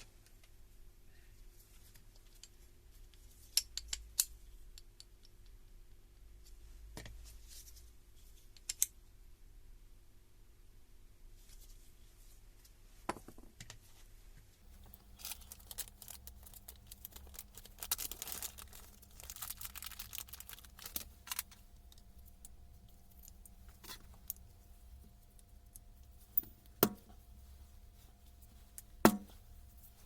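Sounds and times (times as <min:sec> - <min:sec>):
faint steady hum: 0:13.8 - 0:30.0
small clicks and rustling: 0:14.6 - 0:30.0.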